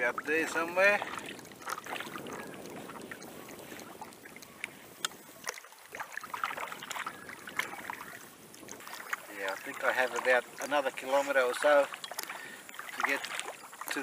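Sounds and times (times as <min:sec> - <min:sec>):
paddle knocking on hull: 0:00.0 - 0:04.1
paddle dipping in water: 0:00.0 - 0:14.0
water lapping against canoe: 0:00.0 - 0:14.0.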